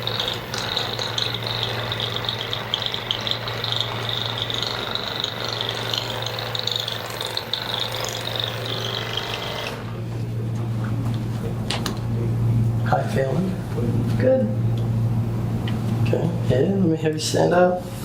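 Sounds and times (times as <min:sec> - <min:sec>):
mechanical rattling buzz: 0:00.0 - 0:10.0.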